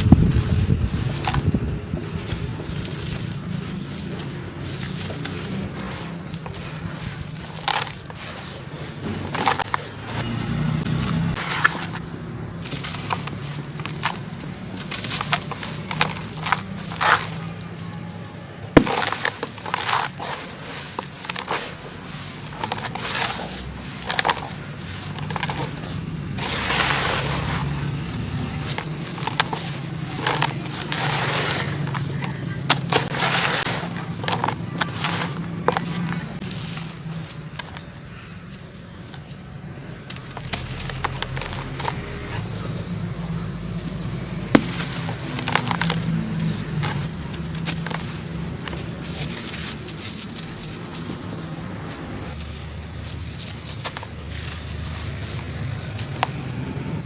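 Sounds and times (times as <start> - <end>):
chunks crackling in water: 44.5 - 51.8.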